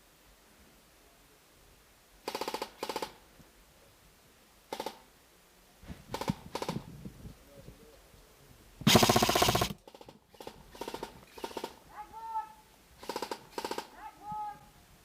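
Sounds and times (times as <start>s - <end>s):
airsoft guns firing bursts: 8.9s - 9.9s.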